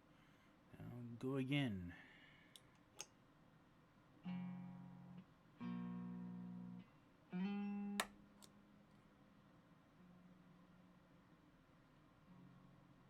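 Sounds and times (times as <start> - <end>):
overdriven electric guitar: 4.3 - 8.0
guitar cutoff click: 7.4 - 8.6.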